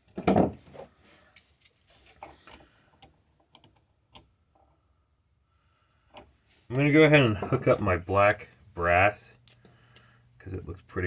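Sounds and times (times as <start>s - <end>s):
small clicks and taps of tools: 1.3s - 4.8s, 6.1s - 6.4s, 9.4s - 10.1s.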